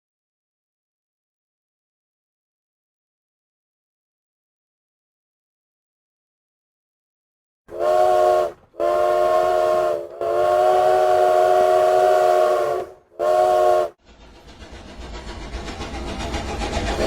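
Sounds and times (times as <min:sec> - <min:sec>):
steam locomotive chime whistle: 0:07.7 - 0:14.0
train running noise: 0:07.7 - 0:17.0.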